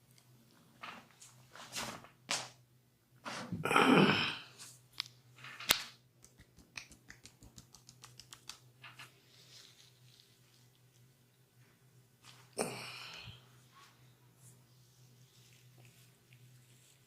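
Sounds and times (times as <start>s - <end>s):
hands rubbing skin: 6.2s - 11.1s, 14.4s - 17.0s.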